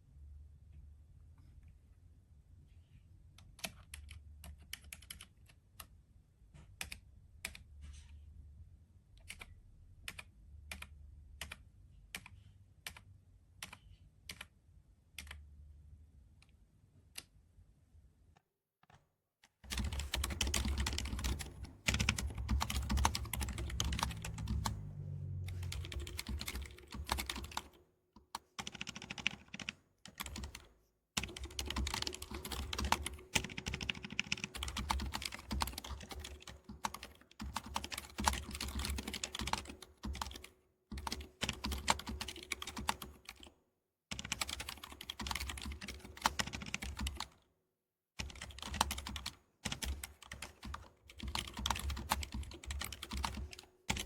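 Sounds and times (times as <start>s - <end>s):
typing on mechanical keyboard: 3.4s - 6.0s, 19.6s - 24.9s, 25.5s - 43.5s, 44.1s - 47.4s, 48.2s - 54.0s.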